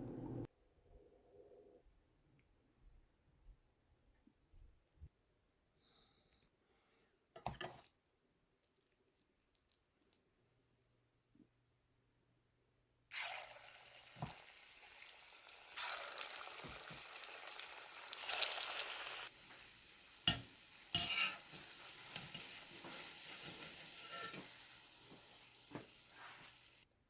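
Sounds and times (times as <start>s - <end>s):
food sizzling in hot oil: 13.1s - 26.8s.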